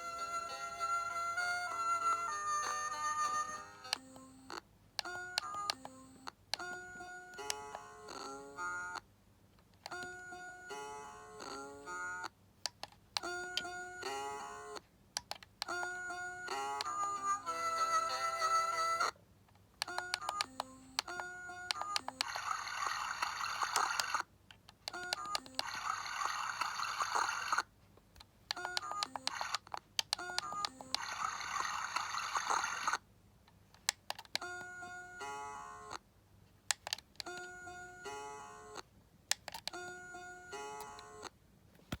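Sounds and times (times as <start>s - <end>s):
tinny electronic lullaby: 0.0s - 9.0s, 9.9s - 12.3s, 13.2s - 14.8s, 15.7s - 19.2s, 19.8s - 24.3s, 24.9s - 27.7s, 28.6s - 33.0s, 34.4s - 36.0s, 37.2s - 38.8s, 39.7s - 41.3s.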